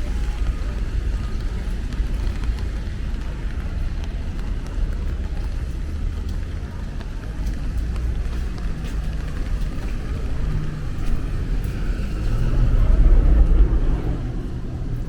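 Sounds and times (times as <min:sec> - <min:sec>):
vehicle passing by: 0:10.1 - 0:15.0.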